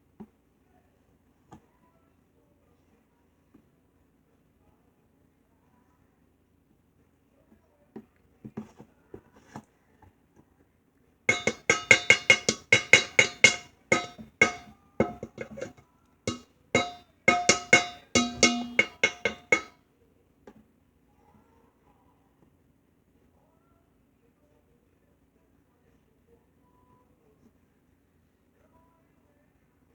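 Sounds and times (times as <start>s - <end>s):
struck ringing instrument notes: 11.3s - 15.7s, 16.3s - 19.7s.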